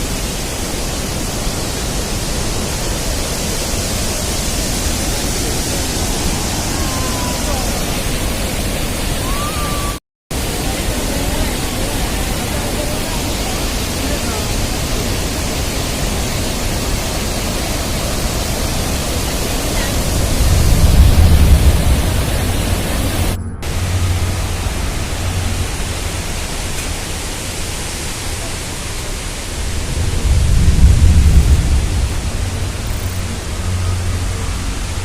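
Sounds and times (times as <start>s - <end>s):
waterfall rushing: 0.0s - 35.0s
low rumble: 19.8s - 27.2s, 29.4s - 35.0s.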